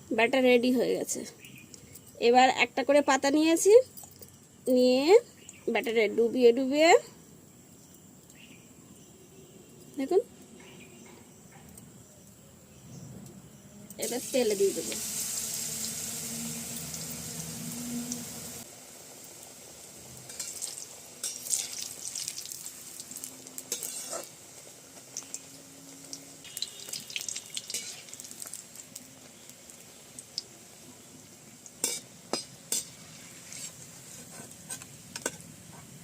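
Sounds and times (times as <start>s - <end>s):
fritters sizzling in hot oil: 13.9s - 36.0s.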